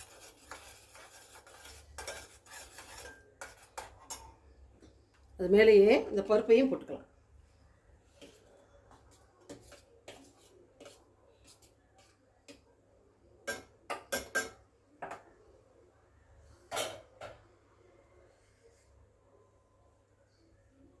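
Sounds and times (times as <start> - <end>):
spoon knocking and scraping pan: 0.0 - 5.0, 8.2 - 12.7, 13.4 - 15.3.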